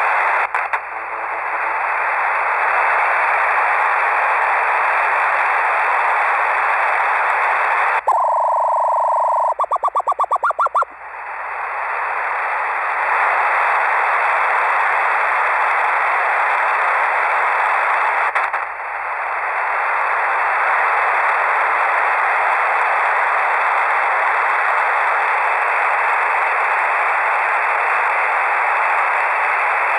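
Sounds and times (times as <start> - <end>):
radio static hiss: 0.0 - 19.8
short radio beeps: 8.1 - 10.8.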